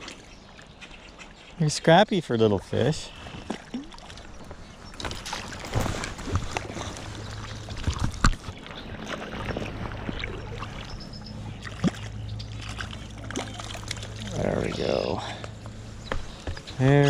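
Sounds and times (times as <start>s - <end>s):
river water splashing: 0.0s - 1.4s, 2.6s - 17.0s
fish splashing: 3.3s - 14.4s.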